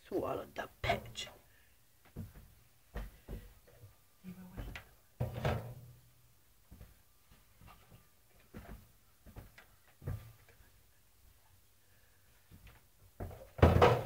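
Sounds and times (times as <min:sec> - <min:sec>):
faint light knocks and taps: 0:02.0 - 0:03.9.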